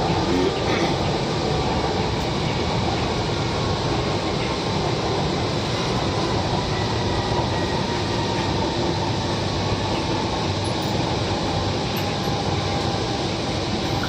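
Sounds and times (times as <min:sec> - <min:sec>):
train carriage running noise: 0:00.0 - 0:14.0.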